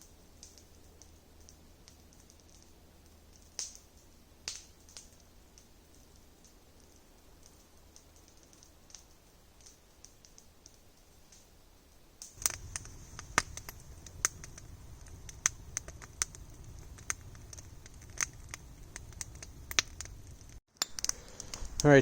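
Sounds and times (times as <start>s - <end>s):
campfire crackling and popping: 0.0s - 22.0s
low rumble: 12.4s - 20.6s.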